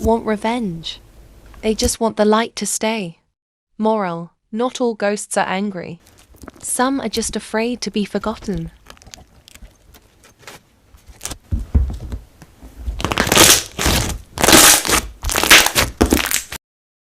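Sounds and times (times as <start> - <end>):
loud crunches: 6.0 - 6.7, 8.3 - 11.5, 12.9 - 16.6.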